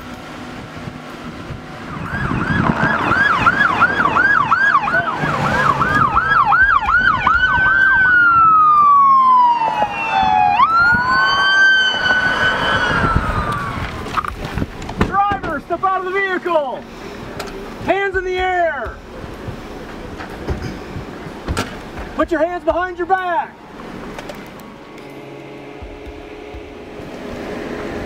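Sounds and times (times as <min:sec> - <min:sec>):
vehicle running: 0:00.0 - 0:28.0
police car siren: 0:01.6 - 0:14.3.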